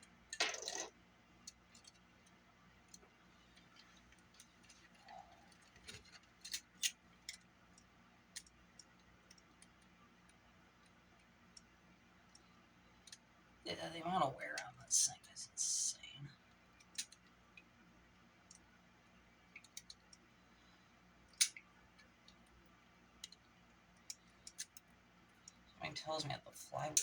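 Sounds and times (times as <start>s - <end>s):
small clicks and taps from tools: 0.0s - 13.3s, 16.8s - 17.7s, 18.4s - 18.7s, 19.5s - 20.3s, 21.3s - 22.6s, 23.2s - 25.6s.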